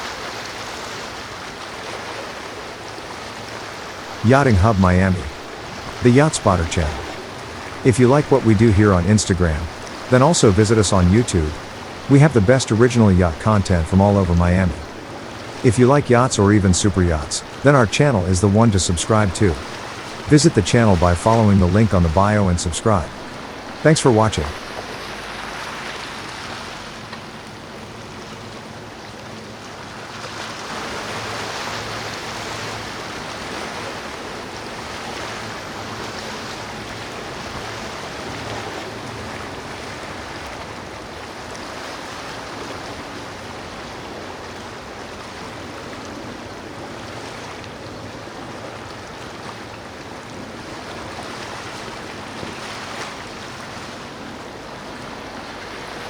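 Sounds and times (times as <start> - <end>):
waves and churned water: 0.0 - 56.0
low boat engine drone: 4.0 - 25.5.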